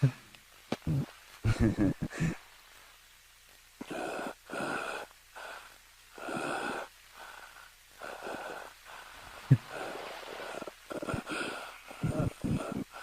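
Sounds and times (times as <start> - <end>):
person wheezing: 11.0 - 13.0.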